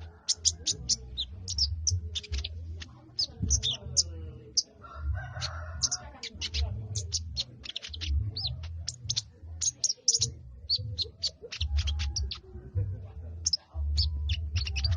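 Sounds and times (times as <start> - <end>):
small bird chirping rapidly: 0.0 - 12.5, 13.4 - 14.9
low uneven rumble: 0.0 - 14.9.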